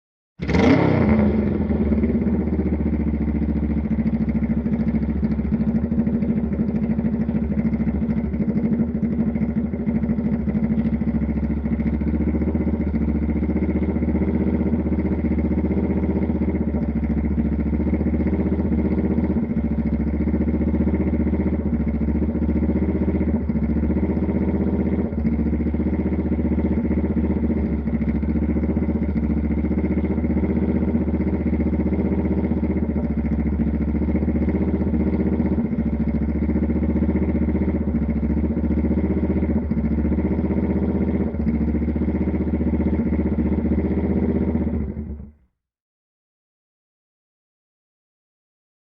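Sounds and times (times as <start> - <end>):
motorcycle engine starting and idling: 0.4 - 45.5.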